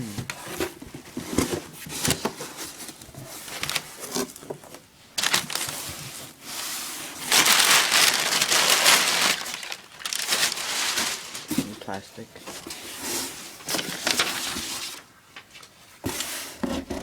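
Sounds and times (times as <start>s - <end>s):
plastic packaging crinkling: 3.5s - 4.3s, 5.2s - 12.0s, 13.6s - 15.0s.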